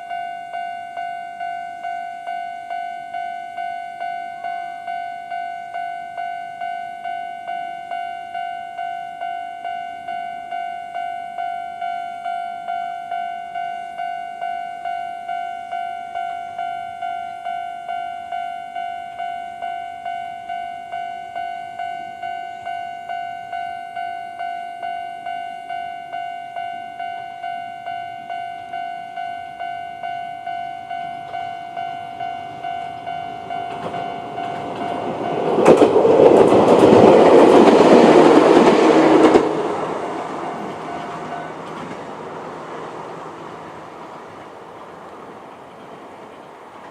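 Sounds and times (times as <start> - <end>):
level crossing bell dinging: 0.0 - 35.8, 40.4 - 41.9
electric train rumble: 0.0 - 46.9.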